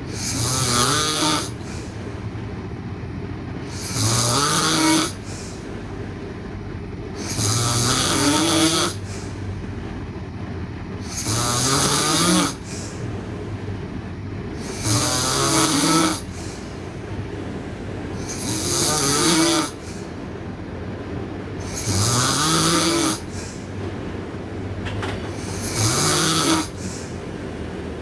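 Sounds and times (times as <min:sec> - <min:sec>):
girl snoring: 0:00.1 - 0:02.0, 0:03.7 - 0:05.7, 0:07.1 - 0:09.6, 0:11.0 - 0:13.1, 0:14.5 - 0:16.7, 0:18.2 - 0:20.2, 0:21.6 - 0:23.8, 0:25.3 - 0:27.2.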